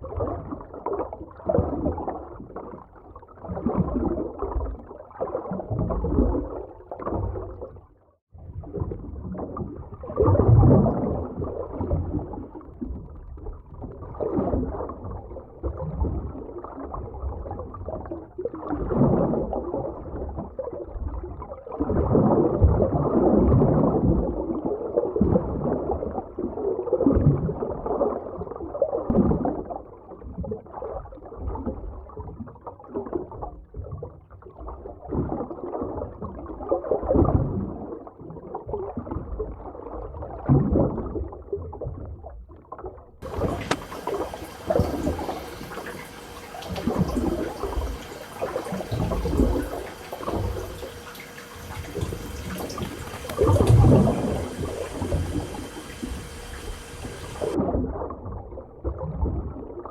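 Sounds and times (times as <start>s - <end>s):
muffled underwater rushing water: 43.2s - 58.1s.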